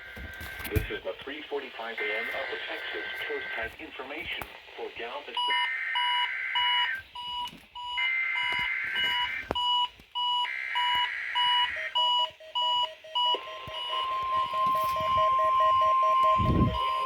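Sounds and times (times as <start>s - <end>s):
single-tone warning alarm: 0.0s - 1.0s, 5.4s - 17.0s
fast low beeping: 10.8s - 17.0s.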